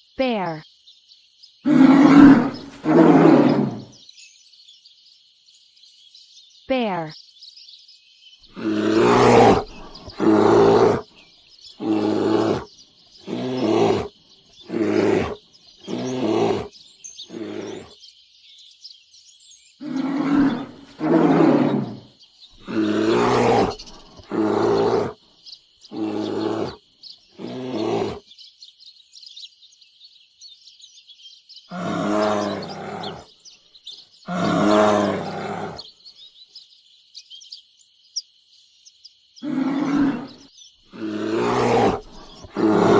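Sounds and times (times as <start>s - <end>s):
bear roaring: 1.6s - 4.0s, 8.5s - 11.1s, 11.8s - 16.7s, 17.3s - 17.9s, 19.8s - 25.2s, 25.9s - 26.8s, 27.4s - 28.2s, 31.7s - 33.3s, 34.3s - 35.8s, 39.4s - 42.9s.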